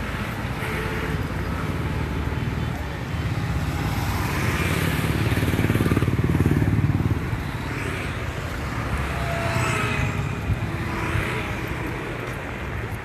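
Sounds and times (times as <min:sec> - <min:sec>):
motorcycle passing: 0:00.0 - 0:13.0
street traffic: 0:00.0 - 0:13.0.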